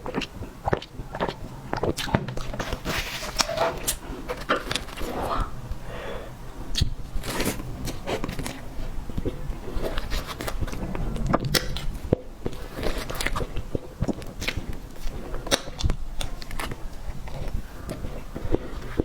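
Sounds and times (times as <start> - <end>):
cake being chewed: 0.0 - 5.8, 12.5 - 19.0.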